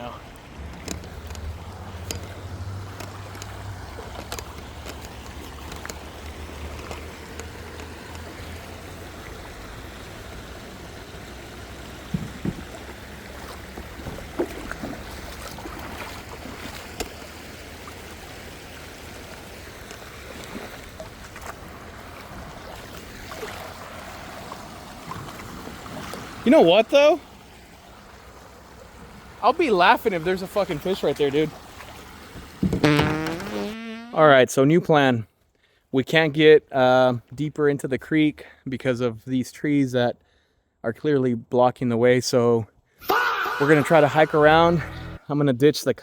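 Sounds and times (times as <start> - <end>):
creek water trickling: 0.0 - 33.8
sharp knocks: 12.1 - 12.7.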